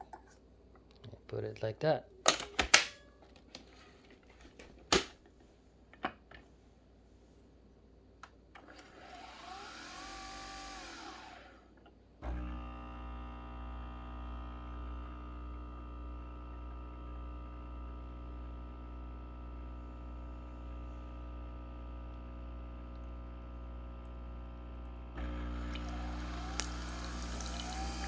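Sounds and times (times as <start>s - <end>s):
coffee machine motor hum: 8.6s - 11.6s, 12.2s - 28.0s.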